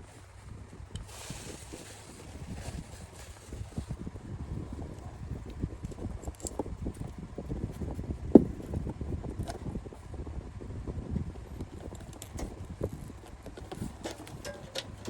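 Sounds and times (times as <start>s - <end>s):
cables clicking and rustling: 11.6s - 15.0s.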